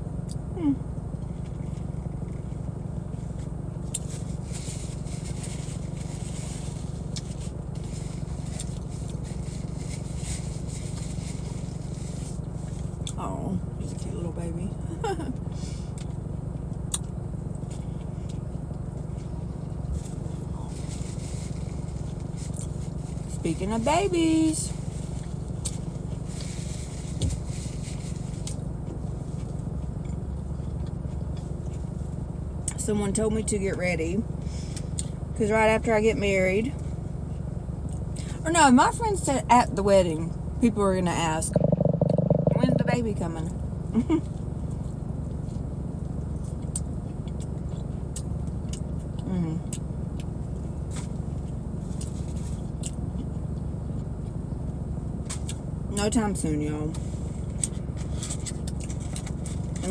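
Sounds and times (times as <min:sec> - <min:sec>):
low rumble in car cabin: 0:00.0 - 0:59.9.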